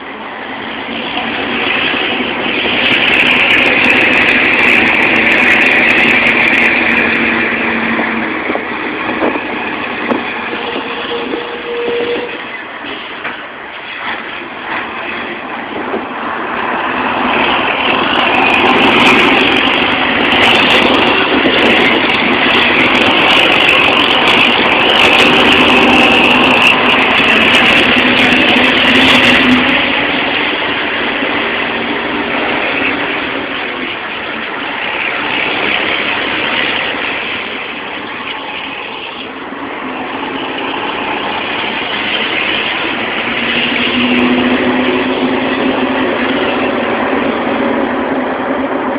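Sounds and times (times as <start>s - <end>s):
loud diesel truck engine: 16.1s - 38.1s, 40.2s - 48.9s.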